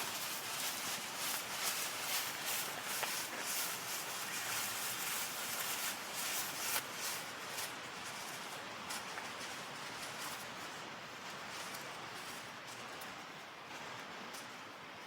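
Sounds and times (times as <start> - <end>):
shallow stream babbling: 0.0 - 8.0.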